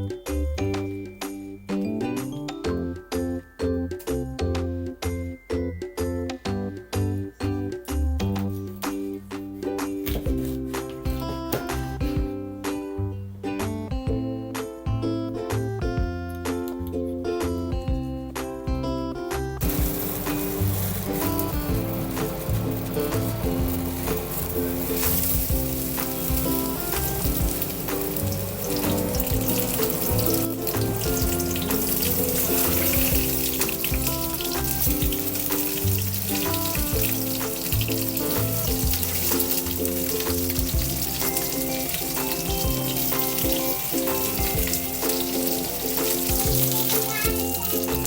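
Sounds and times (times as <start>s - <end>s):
background music with a beat: 0.0s - 48.0s
food sizzling in a pan: 19.6s - 48.0s.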